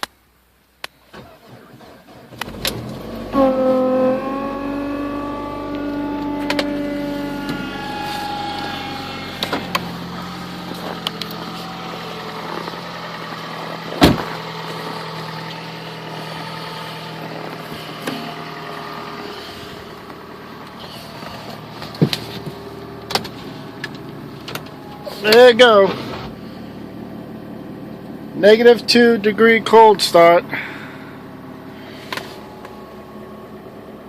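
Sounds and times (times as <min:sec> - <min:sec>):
car engine idling: 0:00.0 - 0:34.0.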